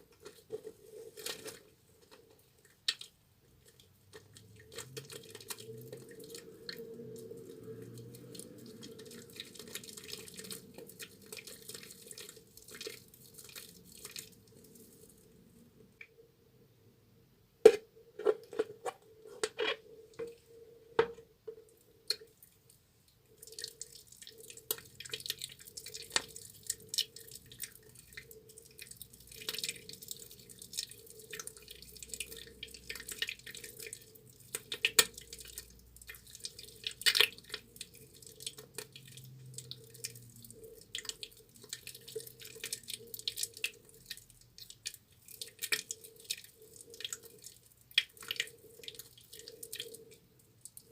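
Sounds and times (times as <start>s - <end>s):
wet squishing of lather: 2.5s - 15.5s, 22.0s - 50.9s
wet clicks and smacks: 2.8s - 6.8s, 28.8s - 50.9s.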